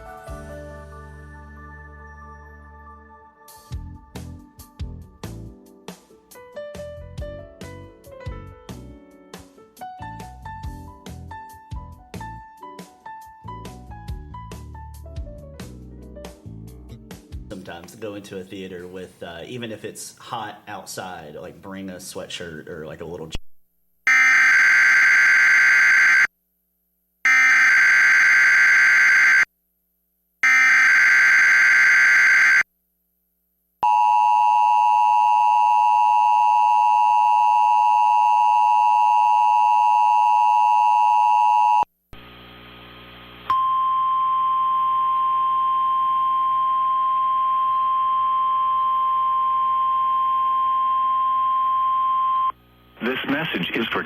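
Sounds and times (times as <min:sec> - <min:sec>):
single steady tone: 0:43.4 - 0:52.6.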